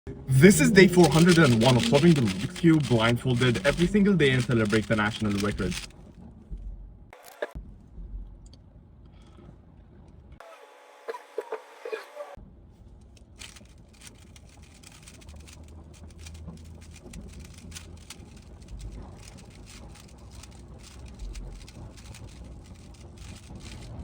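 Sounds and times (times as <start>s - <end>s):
puzzle cube plastic clicks: 0.5s - 5.9s, 13.3s - 24.0s.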